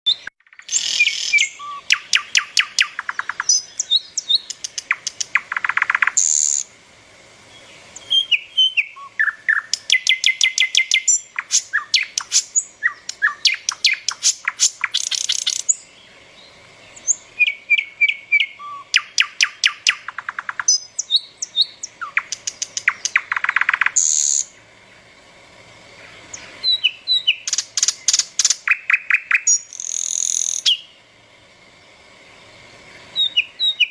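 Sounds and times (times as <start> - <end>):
whistled bird trills: 0.1 - 6.6, 8.0 - 15.8, 33.2 - 33.9
songbirds chirping: 0.1 - 33.9.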